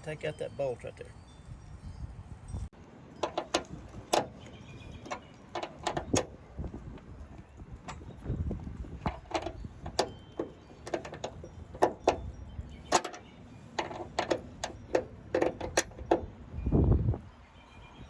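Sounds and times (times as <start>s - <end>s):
wrench clicking on metal bolt: 3.2s - 6.4s, 7.0s - 12.3s, 12.9s - 16.3s.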